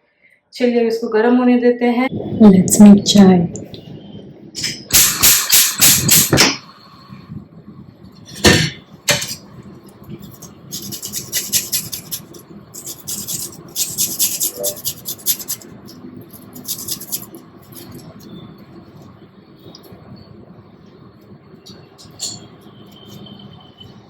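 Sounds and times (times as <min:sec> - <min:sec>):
pots and utensils clattering: 0:08.3 - 0:09.5, 0:10.2 - 0:18.2
sharp knocks: 0:08.4 - 0:09.4
fast repeated rattling: 0:10.2 - 0:18.1.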